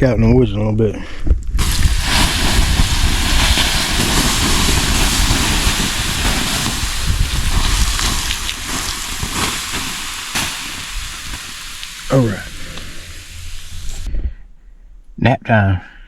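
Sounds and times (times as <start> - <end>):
doused fire hissing and sizzling: 1.5 - 14.1.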